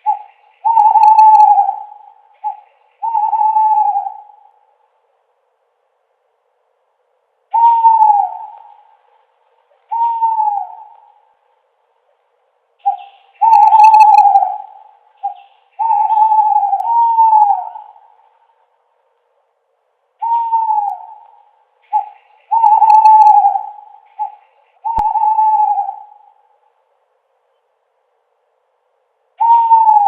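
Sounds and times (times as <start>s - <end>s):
owl hooting: 0.0s - 4.8s, 7.5s - 11.5s, 12.8s - 18.6s, 20.2s - 26.8s, 29.4s - 30.0s.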